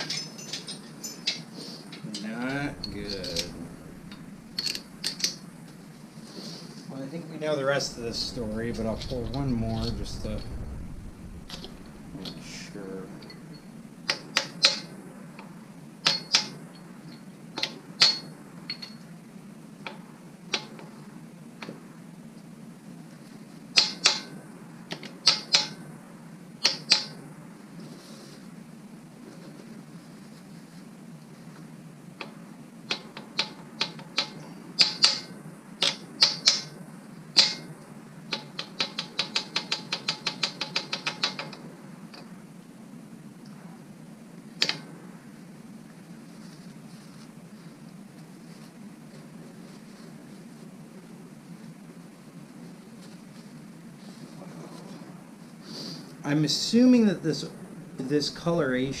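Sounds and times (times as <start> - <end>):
metal tools clinking: 0.0 - 5.4.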